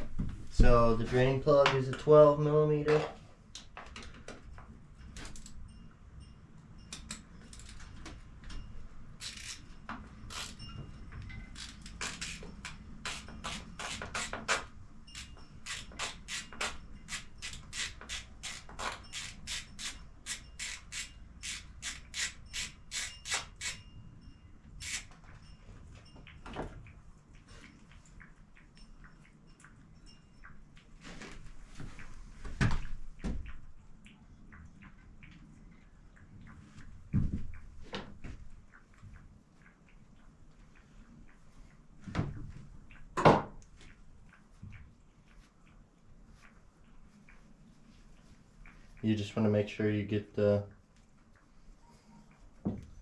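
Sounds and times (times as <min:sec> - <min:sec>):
ratchet wrench clicking: 0:11.6 - 0:23.8, 0:24.8 - 0:25.1.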